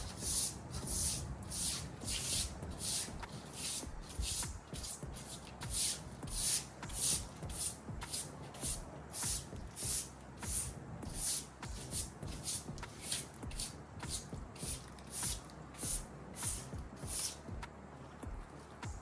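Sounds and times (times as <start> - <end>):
broom sweeping hard surface: 0.0 - 17.5.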